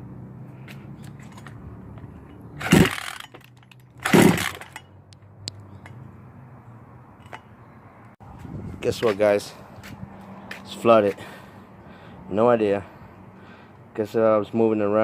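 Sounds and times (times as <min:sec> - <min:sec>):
engine recoil starter cranking: 0:02.6 - 0:04.9.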